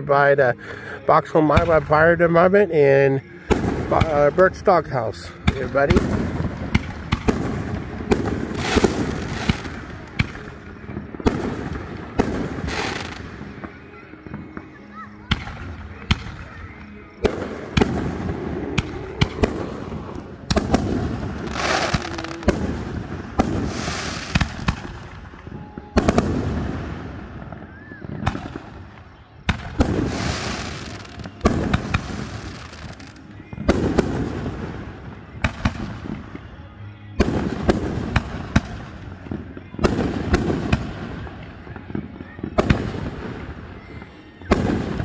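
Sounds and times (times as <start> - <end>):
fireworks bangs: 1.0 - 36.5, 37.2 - 45.0
crackling firework shells: 3.5 - 13.7, 15.3 - 34.8.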